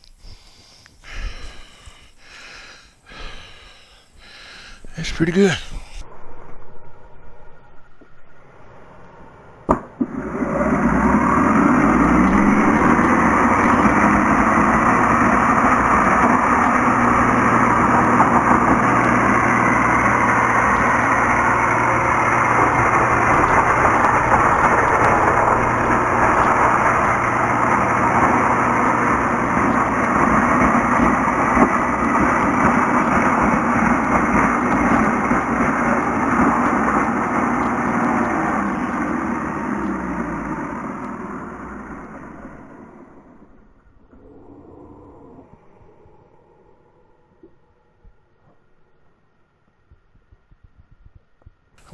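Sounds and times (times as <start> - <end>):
electric chainsaw cutting bushes: 10.0 - 43.4.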